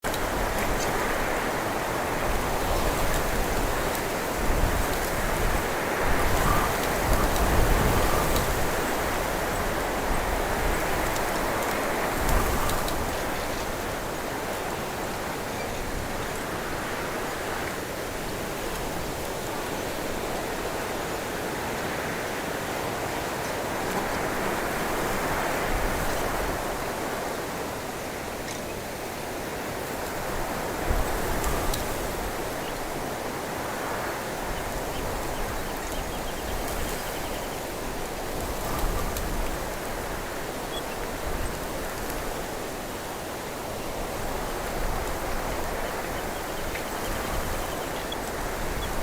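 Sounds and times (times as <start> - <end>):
low wind rumble on microphone: 0.0 - 23.0, 43.7 - 49.0
wind rushing through bush: 0.0 - 49.0.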